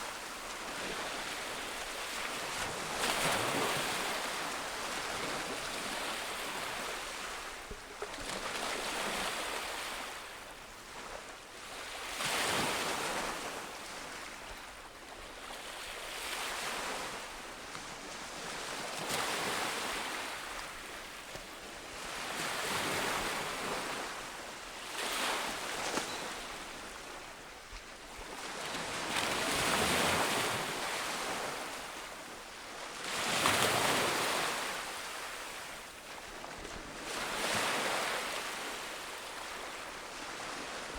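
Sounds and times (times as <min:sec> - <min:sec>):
ocean waves breaking on beach: 0:18.0 - 0:40.9.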